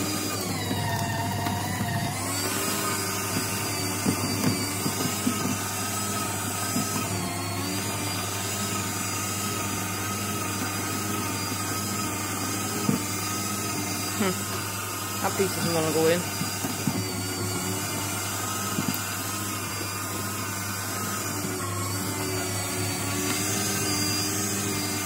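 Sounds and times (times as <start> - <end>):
shredder motor running: 0.0 - 25.0.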